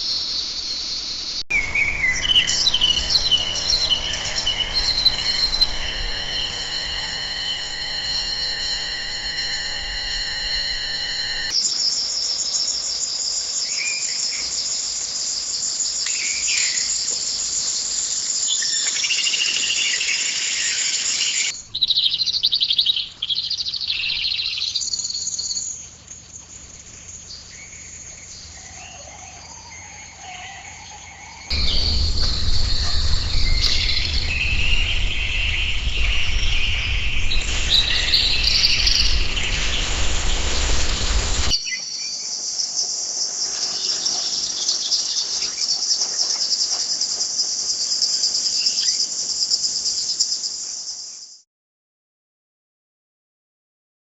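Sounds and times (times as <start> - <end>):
birds chirping: 0.0 - 11.5, 26.9 - 42.4
insects chorus: 0.0 - 51.4
low bird calls: 1.5 - 11.5, 27.6 - 41.8
low rumble: 1.5 - 11.5, 31.5 - 41.6.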